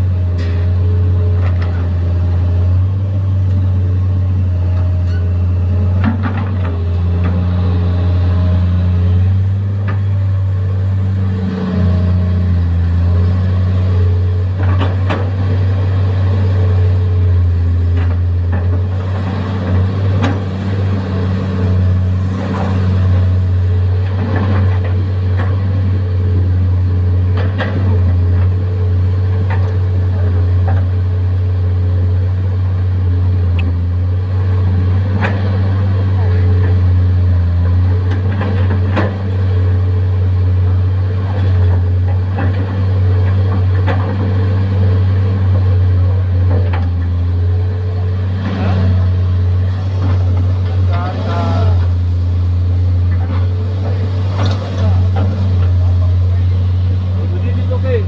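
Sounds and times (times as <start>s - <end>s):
excavator diesel engine under load: 0.0s - 58.0s.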